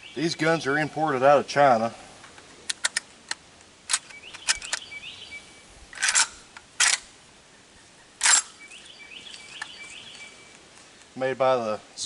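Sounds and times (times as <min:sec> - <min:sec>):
shotgun action clicks: 0:02.7 - 0:04.9, 0:05.9 - 0:07.1, 0:08.2 - 0:08.6.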